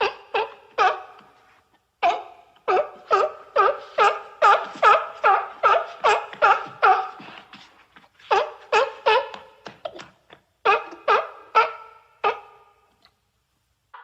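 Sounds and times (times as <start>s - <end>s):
sea lion barking: 0.0s - 1.4s, 2.0s - 7.5s, 8.3s - 10.0s, 10.6s - 12.8s.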